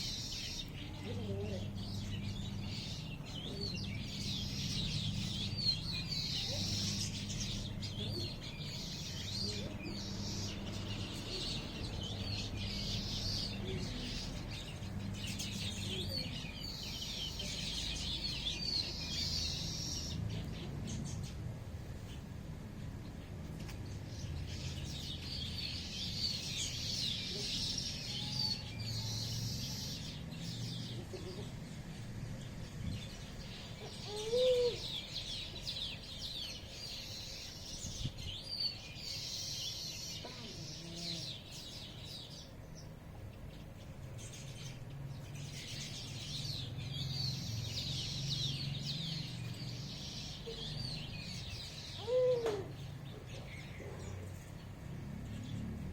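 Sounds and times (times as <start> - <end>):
small birds chirping: 0.0 - 55.9
low-pitched bird calls: 50.4 - 54.0.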